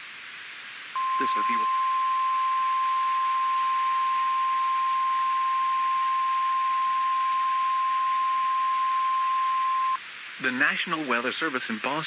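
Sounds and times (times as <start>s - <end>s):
steady hiss: 0.0s - 12.0s
steady alarm beep: 1.0s - 10.0s.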